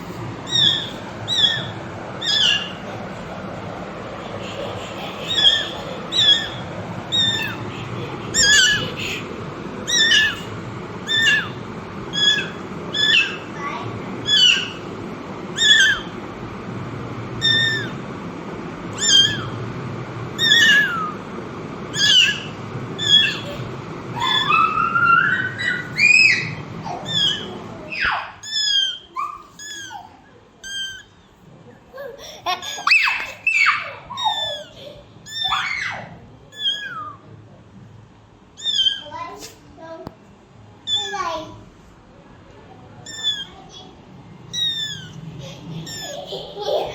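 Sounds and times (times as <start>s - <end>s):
kitten mewing: 4.3s - 9.3s, 9.9s - 13.5s, 17.4s - 18.0s, 19.0s - 19.6s, 20.4s - 21.2s, 22.0s - 31.1s, 34.1s - 35.6s, 36.5s - 37.2s, 38.6s - 39.6s, 40.9s - 41.2s, 43.0s - 43.7s, 44.5s - 45.2s, 45.8s - 46.4s.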